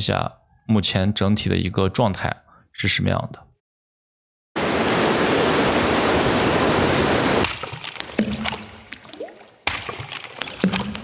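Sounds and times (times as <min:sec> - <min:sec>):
loud rain hiss: 0:04.6 - 0:07.4
water drips and plinks: 0:04.6 - 0:11.0.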